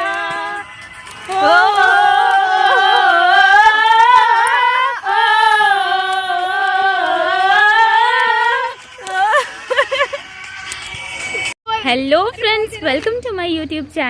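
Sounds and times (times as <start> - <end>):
woman singing wordless melody: 0.0 - 0.7, 1.3 - 9.5.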